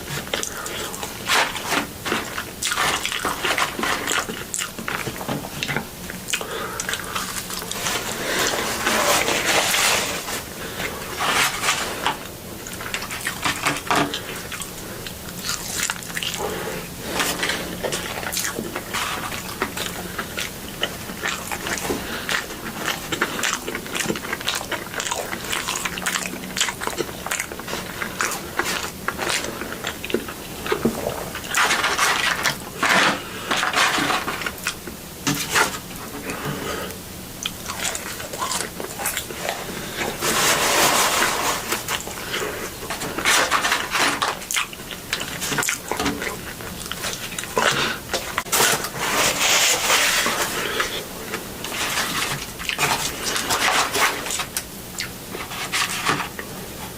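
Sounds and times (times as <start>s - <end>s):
chewing and biting food: 0.0s - 36.5s, 37.4s - 56.5s.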